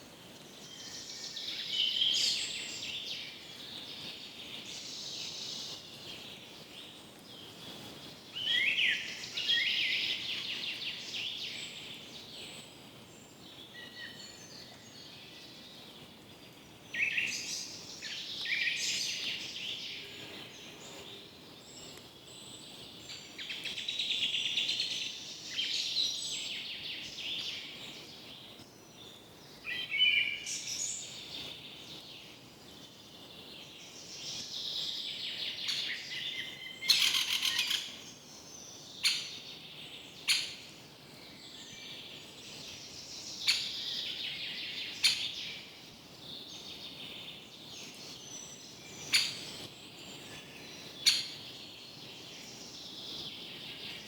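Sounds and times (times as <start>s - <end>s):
birds calling and singing: 0.3s - 54.0s
sharp loud bird calls: 35.6s - 38.3s.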